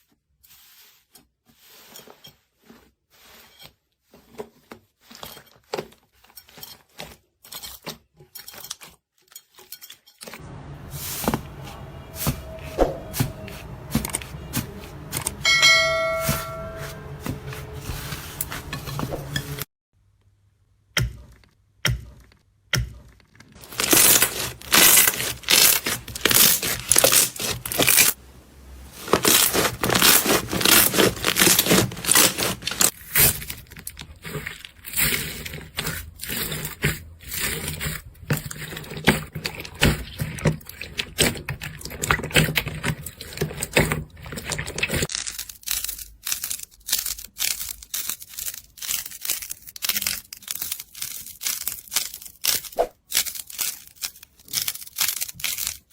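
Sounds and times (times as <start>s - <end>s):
slime squished crackling and popping: 23.6s - 28.2s, 29.0s - 34.0s.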